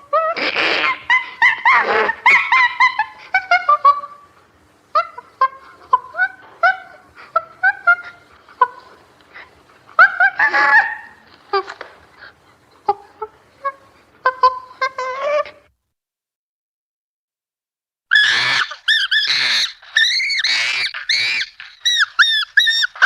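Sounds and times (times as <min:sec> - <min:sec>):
chimpanzee calls: 0:00.0 - 0:04.3, 0:04.9 - 0:11.8, 0:18.1 - 0:23.0
chimpanzee screams: 0:00.1 - 0:03.8, 0:10.0 - 0:11.2, 0:18.1 - 0:23.0.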